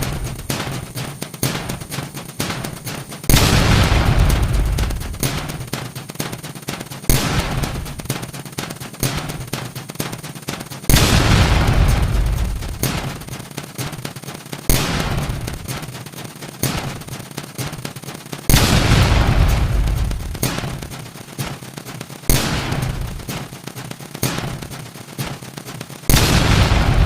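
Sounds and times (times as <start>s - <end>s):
loud hissing bursts: 0.0s - 6.0s, 10.9s - 13.4s, 18.5s - 21.3s
dense crackle of clicks: 0.0s - 27.0s.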